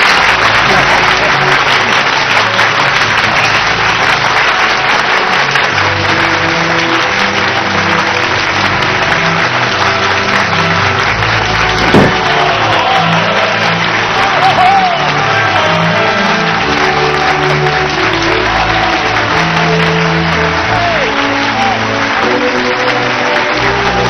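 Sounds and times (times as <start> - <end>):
crowd applauding: 0.0 - 24.0
single loud strike: 11.8 - 12.3.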